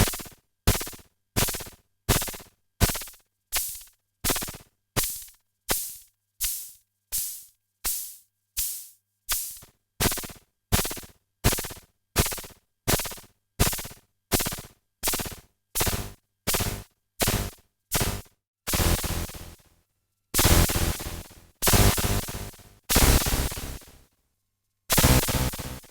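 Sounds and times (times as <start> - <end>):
percussive analog synth notes: 24.9 - 25.9.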